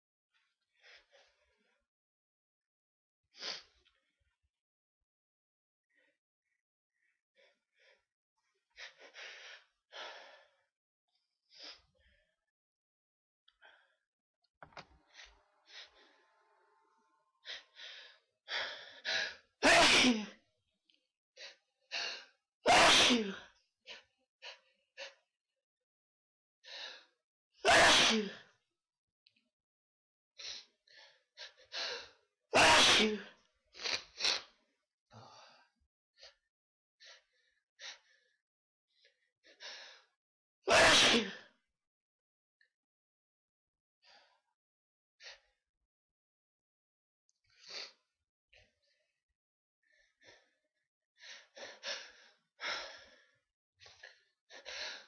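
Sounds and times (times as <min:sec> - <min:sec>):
person sneezing: 0:22.7 - 0:23.3, 0:27.7 - 0:28.3, 0:32.6 - 0:33.2, 0:40.7 - 0:41.4.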